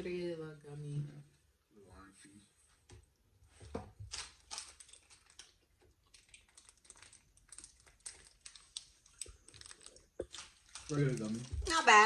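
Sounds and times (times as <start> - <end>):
person chewing gummy candy: 4.0 - 11.9.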